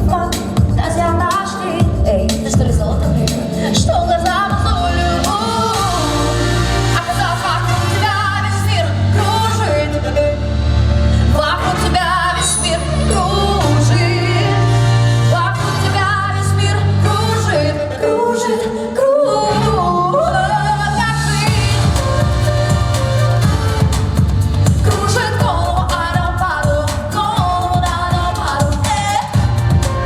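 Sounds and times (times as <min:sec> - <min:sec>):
steady bass notes: 0:00.0 - 0:18.2, 0:19.4 - 0:30.0
person singing: 0:11.2 - 0:30.0.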